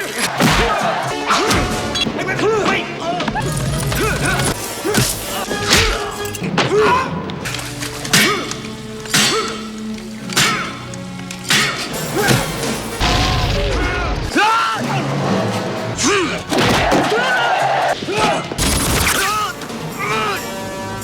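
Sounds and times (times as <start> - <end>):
film score music: 0.0 - 21.0
thuds and crashes of blows: 0.3 - 0.8, 4.9 - 6.8, 11.5 - 14.3.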